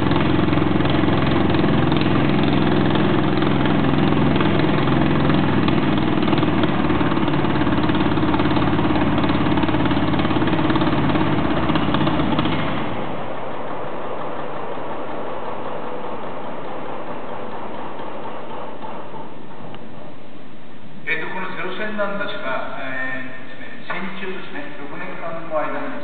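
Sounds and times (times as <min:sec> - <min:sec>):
radial aircraft engine running: 0:00.0 - 0:26.0.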